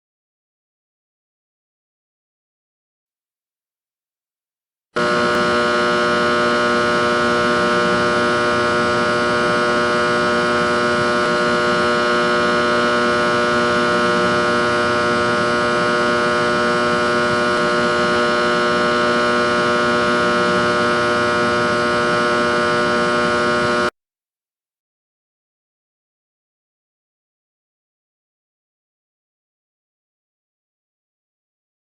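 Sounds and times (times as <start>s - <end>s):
electrical box mains hum: 5.0s - 23.9s.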